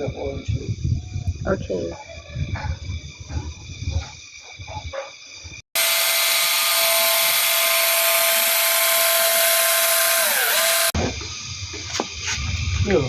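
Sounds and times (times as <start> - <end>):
cordless chainsaw motor whine: 5.8 - 11.0.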